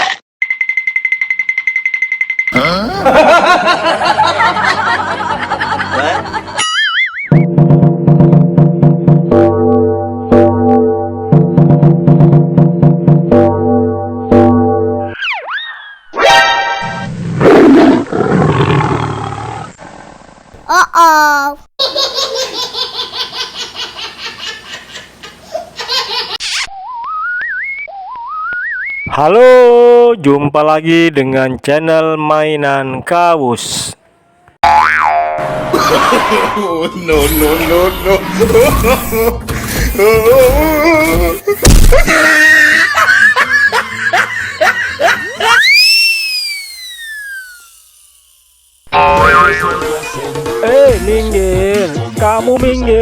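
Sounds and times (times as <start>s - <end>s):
person laughing: 2.6s - 6.8s, 20.7s - 26.6s, 35.7s - 45.6s
cartoon voice yelps: 20.7s - 21.7s
long high swooping cry: 45.3s - 48.1s.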